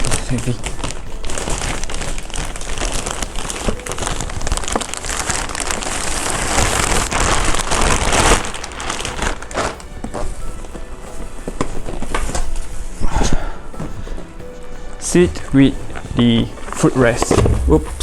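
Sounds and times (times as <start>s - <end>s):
plastic packaging crinkling: 0.0s - 13.1s.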